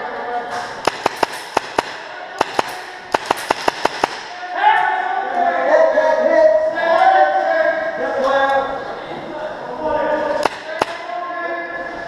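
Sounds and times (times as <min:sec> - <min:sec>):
airsoft rifle shots: 0:00.7 - 0:04.6, 0:10.4 - 0:11.1
raised voices: 0:04.2 - 0:12.0.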